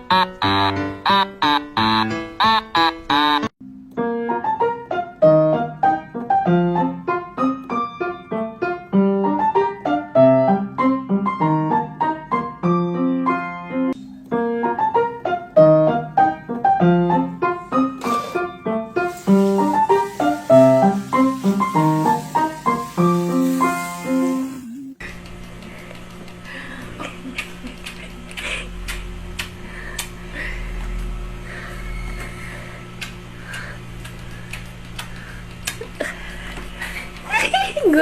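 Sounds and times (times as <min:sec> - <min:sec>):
piano music: 0:00.0 - 0:25.0
steady hiss: 0:19.0 - 0:24.7.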